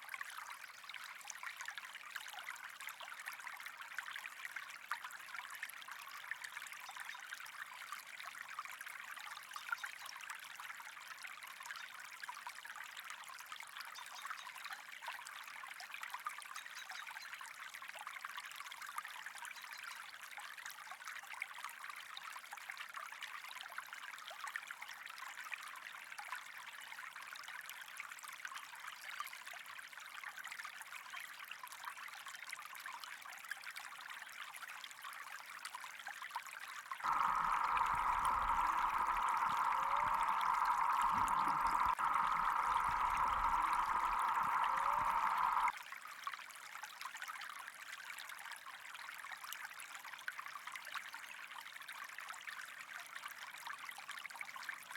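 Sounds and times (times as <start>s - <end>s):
water trickling and bubbling: 37.0s - 45.7s.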